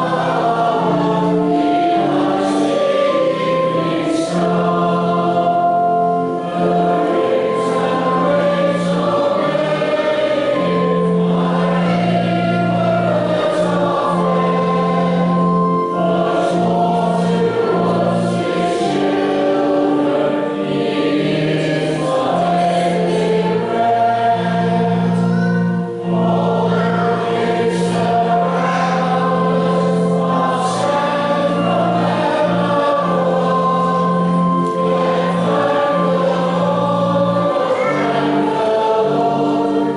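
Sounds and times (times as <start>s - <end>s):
choir singing a hymn: 0.0s - 39.9s
long held bass notes: 0.0s - 39.9s.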